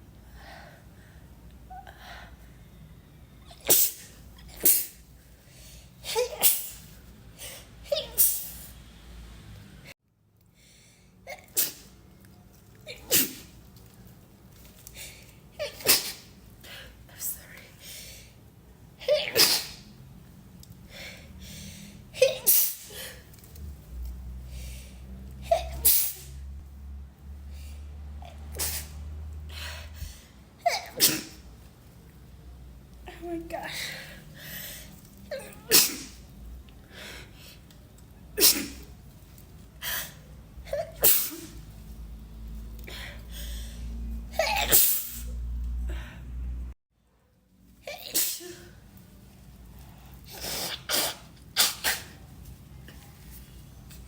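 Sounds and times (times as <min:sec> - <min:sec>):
woman sneezing: 0:03.5 - 0:05.0, 0:06.1 - 0:08.7, 0:11.3 - 0:12.0, 0:12.9 - 0:13.6, 0:15.6 - 0:16.3, 0:19.0 - 0:19.9, 0:22.2 - 0:23.2, 0:25.4 - 0:26.4, 0:28.4 - 0:29.0, 0:30.6 - 0:31.4, 0:35.3 - 0:36.2, 0:38.4 - 0:38.9, 0:39.9 - 0:41.6, 0:44.3 - 0:45.4, 0:47.9 - 0:48.7, 0:50.3 - 0:52.2.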